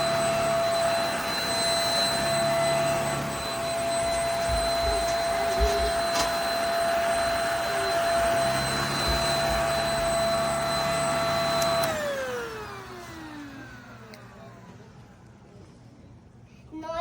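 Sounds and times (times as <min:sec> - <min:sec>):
vacuum cleaner whining: 0:00.0 - 0:15.3.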